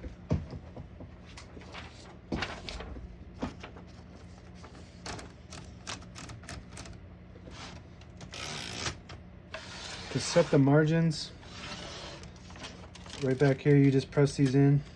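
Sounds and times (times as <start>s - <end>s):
typewriter mechanical clicks: 5.0s - 7.0s, 8.2s - 9.2s.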